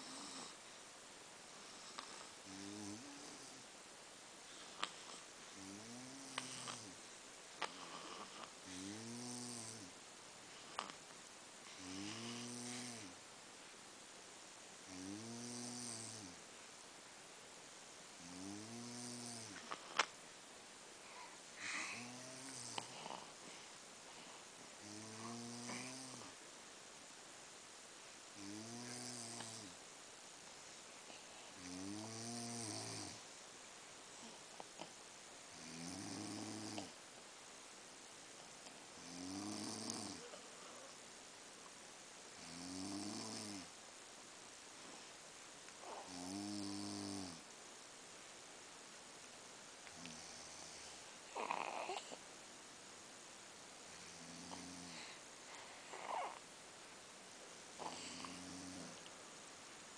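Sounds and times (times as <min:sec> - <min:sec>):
person snoring: 0:01.7 - 0:03.6, 0:04.9 - 0:07.0, 0:07.6 - 0:09.9, 0:11.7 - 0:13.2, 0:14.9 - 0:16.4, 0:18.2 - 0:19.9, 0:21.1 - 0:23.4, 0:24.8 - 0:26.4, 0:28.4 - 0:29.8, 0:31.6 - 0:33.2, 0:39.0 - 0:40.9, 0:50.0 - 0:52.2, 0:54.0 - 0:55.2, 0:55.9 - 0:56.4, 0:57.8 - 0:59.0.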